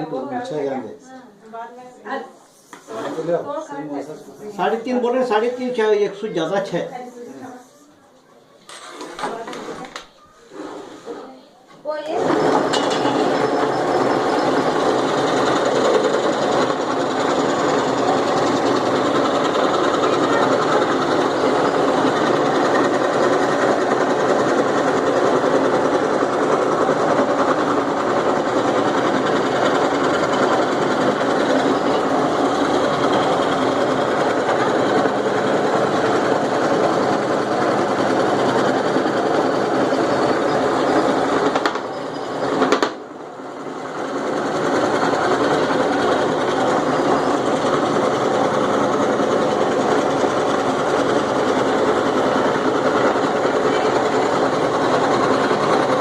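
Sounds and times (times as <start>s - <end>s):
electric jigsaw sawing: 12.2s - 56.0s.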